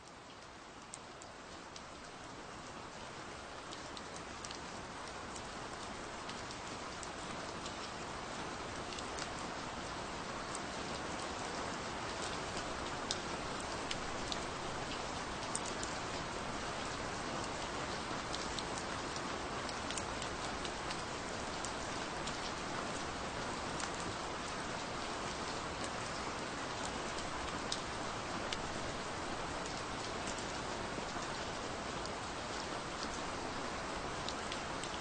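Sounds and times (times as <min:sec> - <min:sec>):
gentle rain falling: 0:00.0 - 0:35.0
raindrop ticks: 0:03.6 - 0:08.0, 0:12.1 - 0:35.0.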